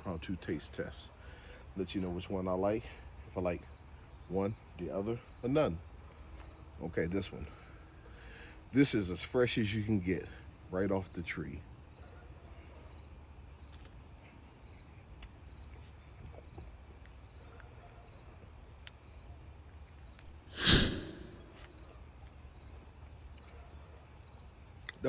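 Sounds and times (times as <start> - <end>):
crickets chirring: 0.0 - 25.0
loud short rush of noise: 20.5 - 21.6.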